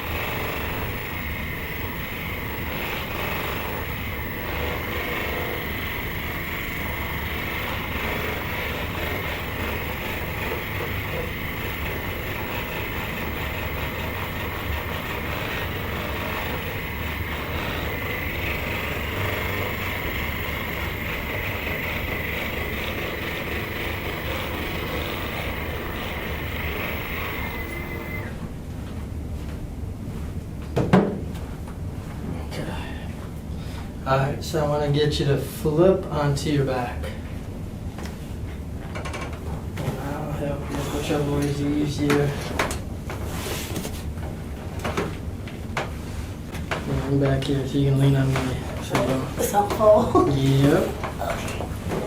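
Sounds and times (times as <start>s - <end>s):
machine rumbling with high whine: 0.0s - 29.0s.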